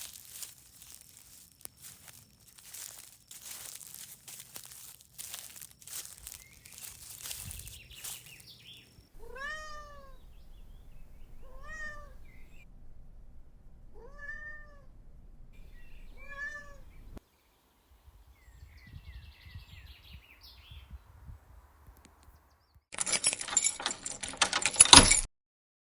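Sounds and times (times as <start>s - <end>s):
cat meowing: 9.2s - 12.7s, 13.8s - 17.2s.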